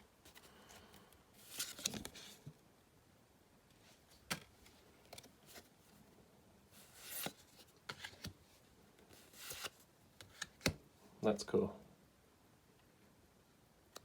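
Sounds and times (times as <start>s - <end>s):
card sliding over card: 6.8s - 8.3s, 9.1s - 10.8s
cards tapping and clicking: 9.5s - 10.8s.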